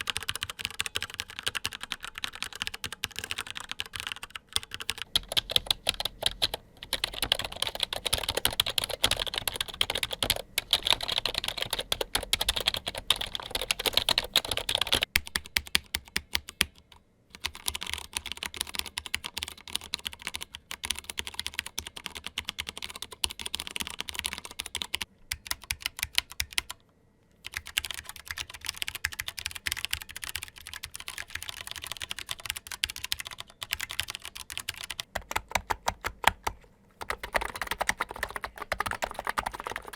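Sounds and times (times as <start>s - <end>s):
fast typing on keyboards: 0.0s - 26.8s, 27.4s - 39.9s.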